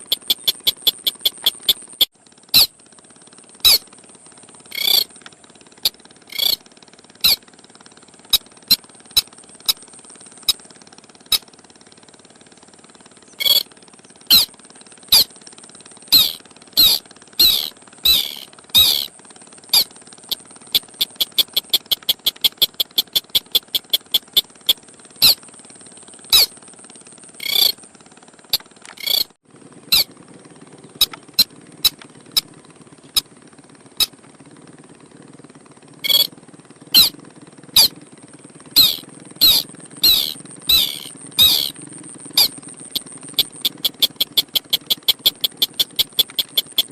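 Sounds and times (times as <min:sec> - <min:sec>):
bird call sharp high notes: 0:04.7 - 0:05.1, 0:06.3 - 0:06.6, 0:13.4 - 0:13.6, 0:16.1 - 0:19.1, 0:27.4 - 0:27.8, 0:36.1 - 0:36.3, 0:38.8 - 0:41.7.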